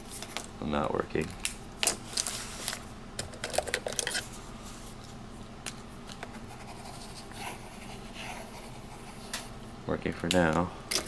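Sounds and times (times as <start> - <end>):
pen nib scratching on paper: 6.3 - 9.4.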